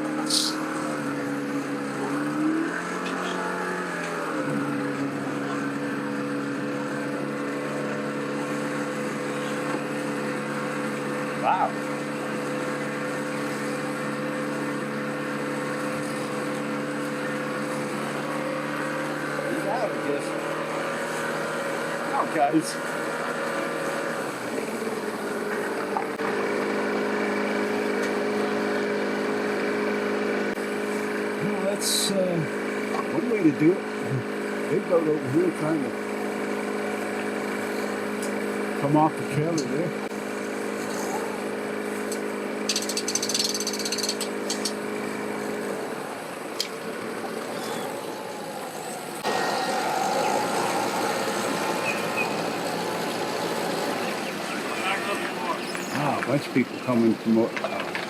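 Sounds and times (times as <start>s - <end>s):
engine idling: 0.0s - 58.0s
sharp clicks: 42.1s - 44.8s.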